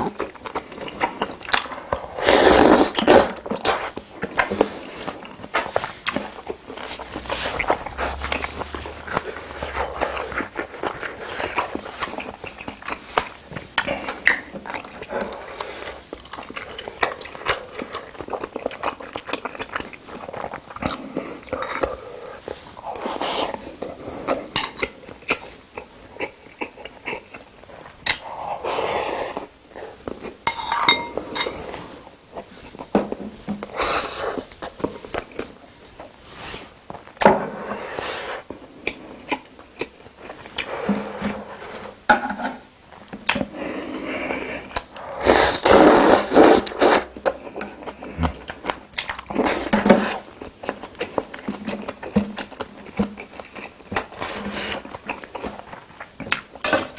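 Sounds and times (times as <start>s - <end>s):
utensils clinking against dishes: 30.5s - 31.6s.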